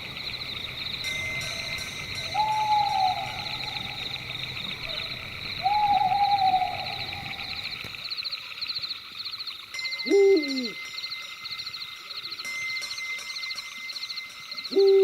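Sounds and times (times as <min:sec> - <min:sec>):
night insects chirping: 0:00.0 - 0:15.0
owl hooting: 0:02.3 - 0:07.8, 0:10.1 - 0:10.8.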